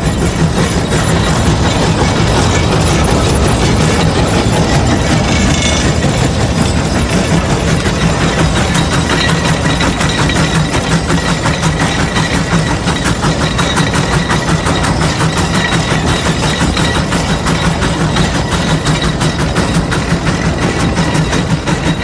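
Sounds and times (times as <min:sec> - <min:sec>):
mechanical knocking: 0:00.0 - 0:22.0
steam engine exhaust chuffs: 0:00.0 - 0:22.0.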